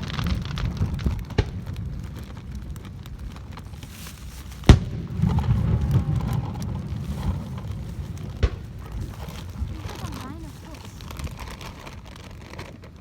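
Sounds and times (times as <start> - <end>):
low rumble: 0.0 - 12.3
fireworks bursting: 0.0 - 13.0.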